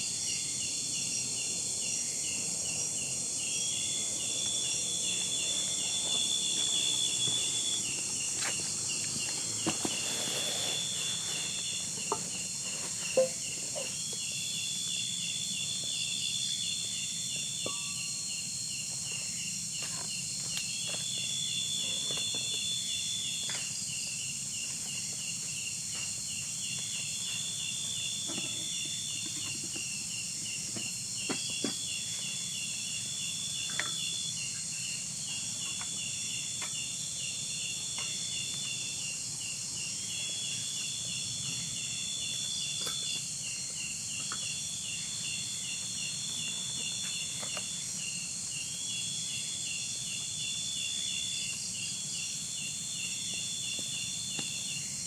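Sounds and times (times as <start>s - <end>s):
steady high hiss: 0.0s - 20.8s
higher insect call: 0.0s - 55.0s
insects pulsing trill: 0.0s - 55.0s.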